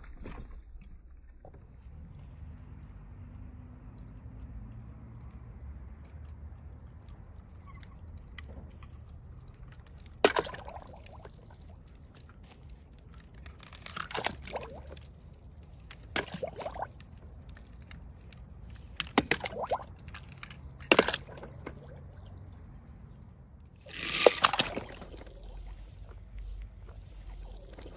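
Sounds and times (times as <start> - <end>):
low steady rumble: 0.7 - 27.9
toy cars splashing into water: 6.5 - 27.9.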